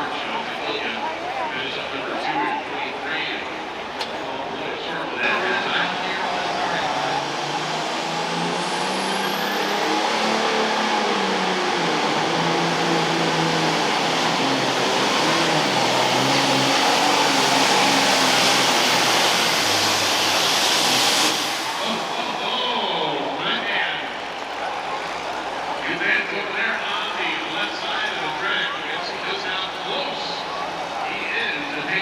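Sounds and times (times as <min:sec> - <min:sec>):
diesel engine running at high revs: 0:02.9 - 0:24.2.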